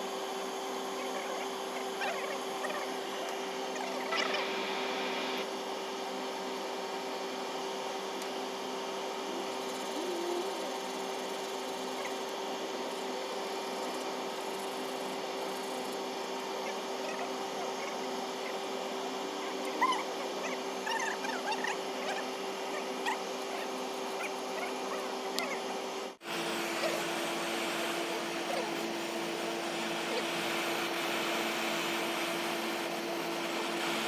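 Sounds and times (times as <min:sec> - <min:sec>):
machine humming: 0:00.0 - 0:05.6.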